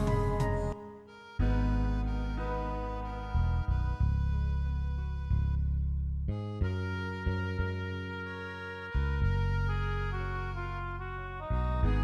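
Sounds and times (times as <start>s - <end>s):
instrumental gospel backing track: 0.0s - 0.8s, 1.4s - 5.4s.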